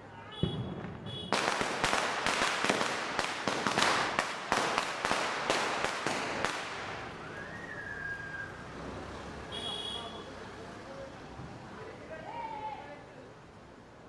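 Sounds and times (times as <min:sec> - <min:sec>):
firecrackers bursting: 0:00.3 - 0:08.6
short rising whistle: 0:07.2 - 0:08.6.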